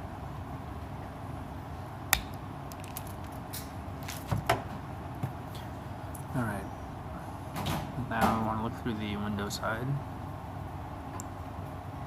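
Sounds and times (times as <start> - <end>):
wire snipping clicks: 2.1 - 3.0.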